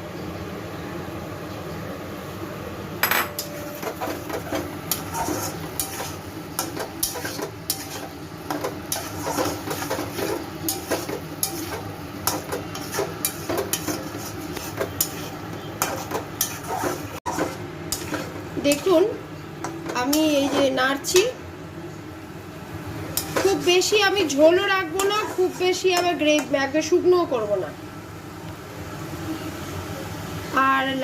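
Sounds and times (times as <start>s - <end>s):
utensil scraping against pan: 3.9s - 18.8s, 25.0s - 26.5s.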